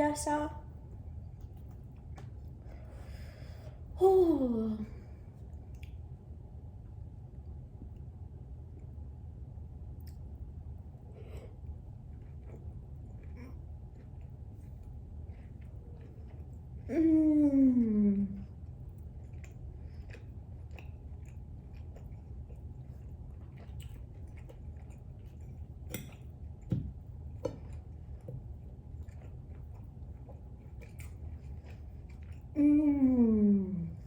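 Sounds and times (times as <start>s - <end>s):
steady low hum: 0.0s - 34.0s
person chewing food: 9.9s - 17.0s, 18.3s - 32.6s
person humming mmm: 32.6s - 34.0s.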